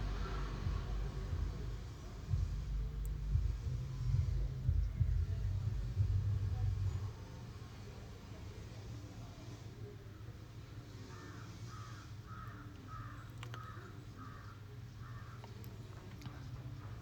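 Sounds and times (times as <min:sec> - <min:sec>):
faint low hum: 0:00.0 - 0:17.0
crow cawing: 0:11.1 - 0:15.4.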